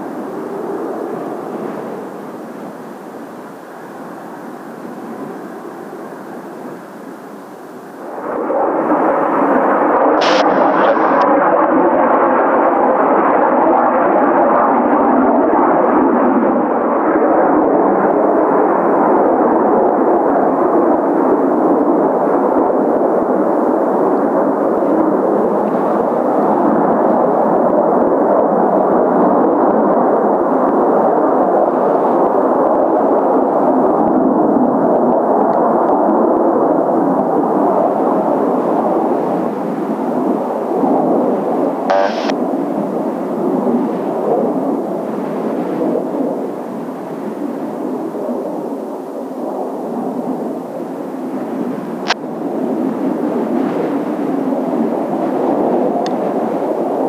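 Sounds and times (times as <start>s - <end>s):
jet engines roaring: 0.0s - 31.6s, 35.3s - 48.7s.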